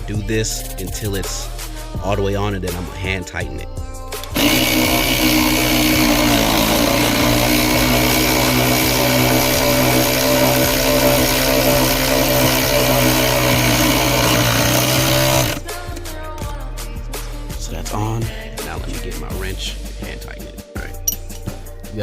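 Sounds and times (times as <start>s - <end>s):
cordless power tool driving bolt: 4.2s - 16.1s.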